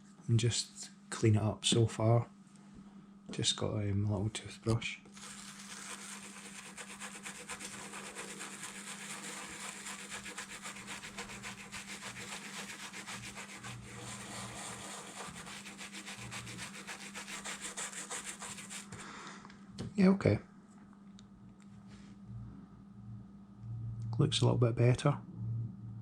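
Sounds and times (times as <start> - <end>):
toothbrush scrubbing circuit board: 5.2 - 19.0.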